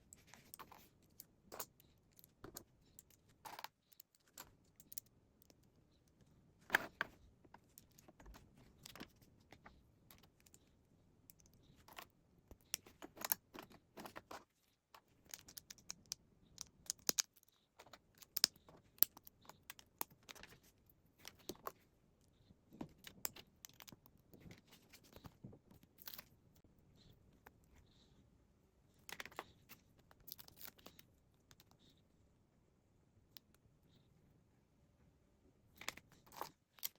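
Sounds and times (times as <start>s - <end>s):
plastic bricks clicking and rattling: 15.1s - 20.6s.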